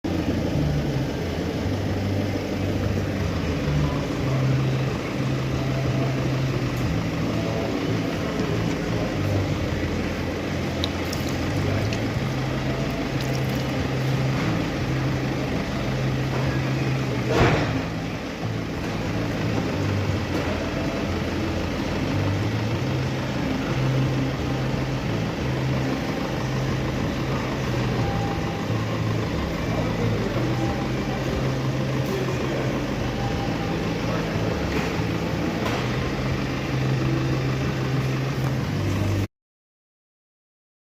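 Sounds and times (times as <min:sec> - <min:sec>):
car engine idling unevenly: 0:00.0 - 0:39.3.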